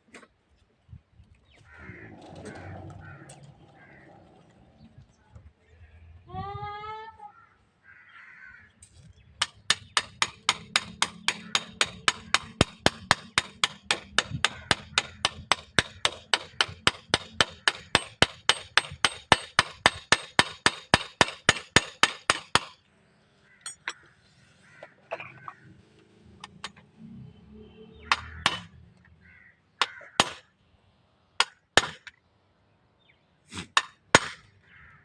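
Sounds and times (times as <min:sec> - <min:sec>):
hammer striking metal: 0:09.4 - 0:22.8, 0:28.1 - 0:28.7.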